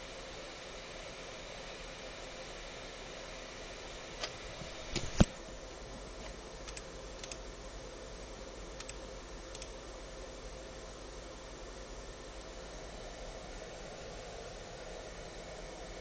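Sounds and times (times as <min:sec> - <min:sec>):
faint hum: 0:00.0 - 0:16.0
steady hiss: 0:00.0 - 0:16.0
small clicks: 0:06.6 - 0:07.4, 0:08.8 - 0:09.8.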